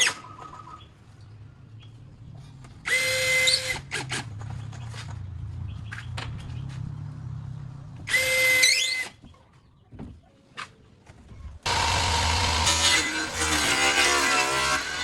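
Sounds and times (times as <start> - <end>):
loud power tool whirring: 8.1 - 9.0, 11.7 - 15.0
low motor hum: 11.7 - 15.0.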